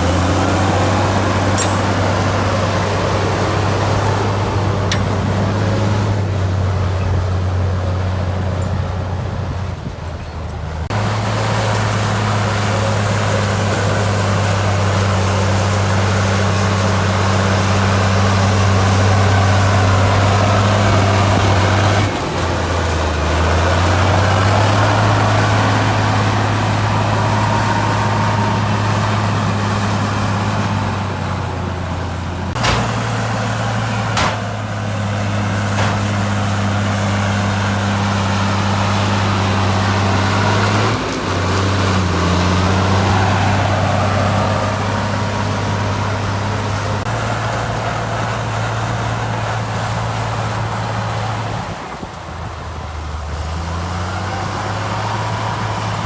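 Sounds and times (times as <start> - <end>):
heavy diesel engine running: 0.0 - 56.0
sharp knocks: 32.6 - 33.3, 34.0 - 34.7.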